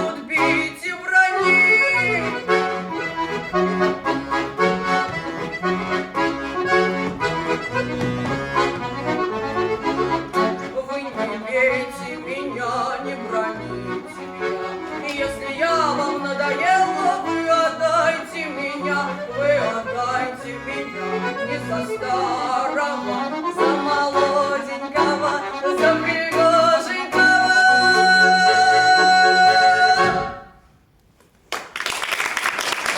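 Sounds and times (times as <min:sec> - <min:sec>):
accordion folk melody: 0:00.0 - 0:30.8.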